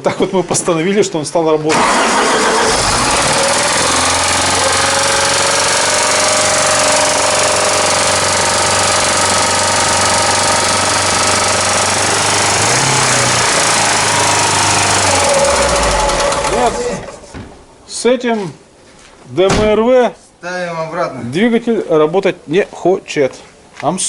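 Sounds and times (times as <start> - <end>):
engine knock: 1.7 - 17.1
car engine fast idle: 1.7 - 17.3.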